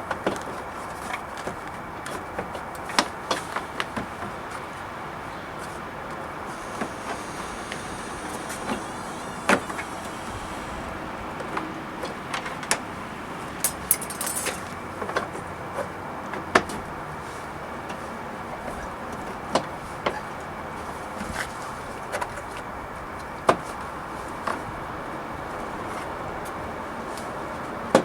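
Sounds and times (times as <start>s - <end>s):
steady hiss: 6.2s - 14.7s
clicks and taps of wiring: 13.6s - 14.8s.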